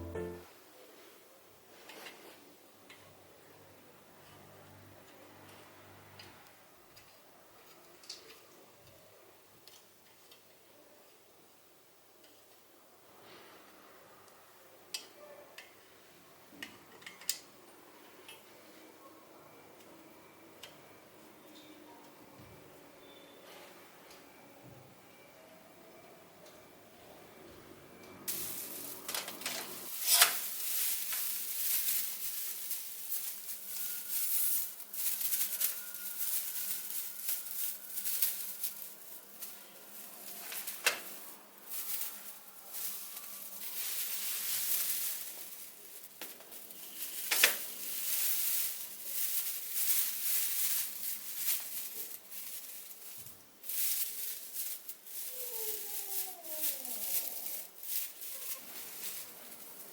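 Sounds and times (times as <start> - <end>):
rustling and handling noise: 0.0 - 3.0, 28.2 - 59.9.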